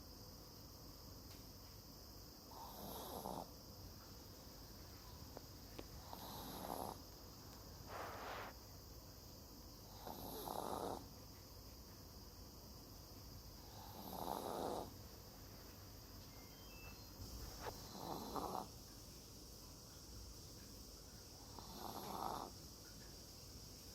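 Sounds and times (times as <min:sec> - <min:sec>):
dog snoring: 0:02.5 - 0:03.5, 0:06.0 - 0:07.1, 0:09.8 - 0:11.1, 0:13.6 - 0:15.0, 0:17.6 - 0:18.7, 0:21.4 - 0:22.6.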